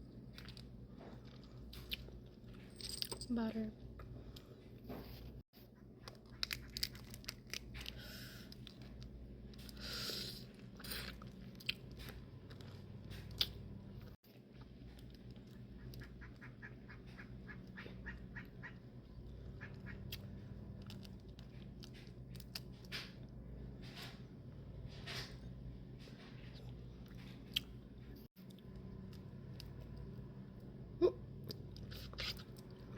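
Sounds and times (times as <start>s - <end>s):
crawfish shells cracking: 6.0s - 8.0s
wet chewing: 10.4s - 16.5s, 31.4s - 32.9s.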